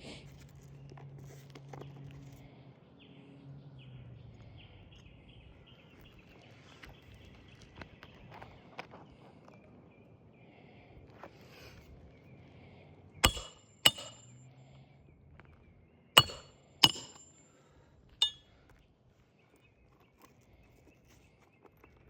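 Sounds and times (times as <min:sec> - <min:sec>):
hammer striking nails: 0:13.2 - 0:14.4, 0:16.2 - 0:17.4.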